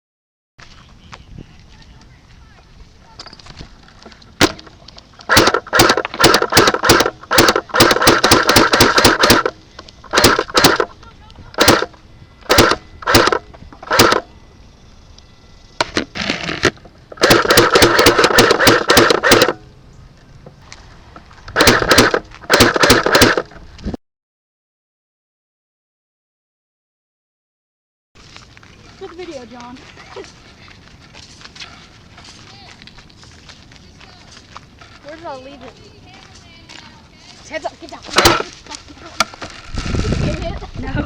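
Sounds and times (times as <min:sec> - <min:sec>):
airsoft guns firing: 0:04.4 - 0:04.7, 0:05.3 - 0:10.9, 0:11.6 - 0:11.9, 0:12.5 - 0:14.3, 0:17.2 - 0:19.6, 0:21.6 - 0:23.4, 0:38.1 - 0:38.5.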